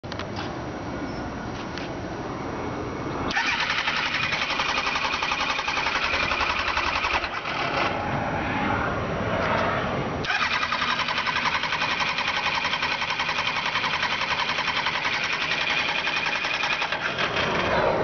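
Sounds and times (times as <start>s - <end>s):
motorcycle starter cranking engine: 3.3s - 8.0s, 10.2s - 17.7s.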